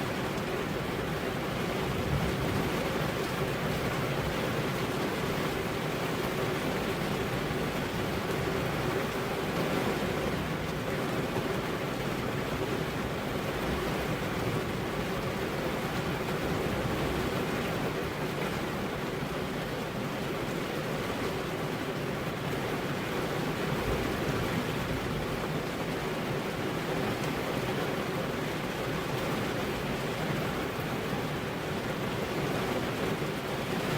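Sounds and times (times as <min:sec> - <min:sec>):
heavy rain falling: 0:00.0 - 0:33.9.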